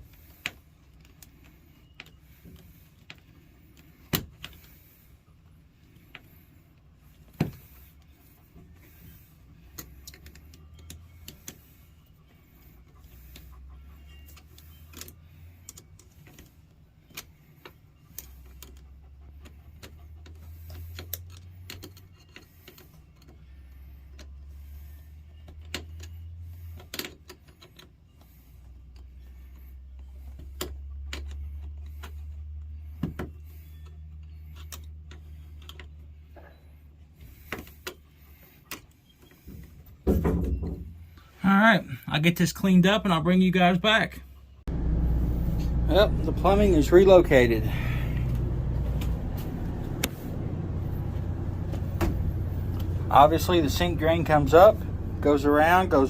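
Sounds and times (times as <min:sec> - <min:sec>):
low rumble: 0:44.7 - 0:56.0.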